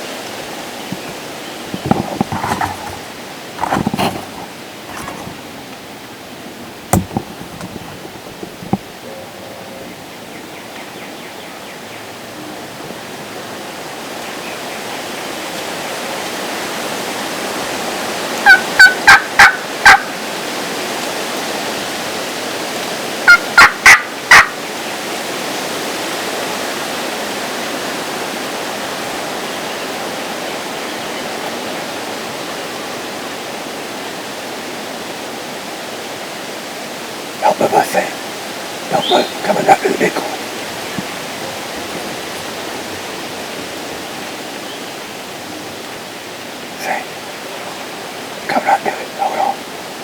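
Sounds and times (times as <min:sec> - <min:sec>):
wind noise on microphone: 0:00.0 - 0:10.1, 0:40.3 - 0:46.4
turkey gobbling: 0:18.4 - 0:20.2, 0:23.3 - 0:24.6, 0:38.9 - 0:43.2.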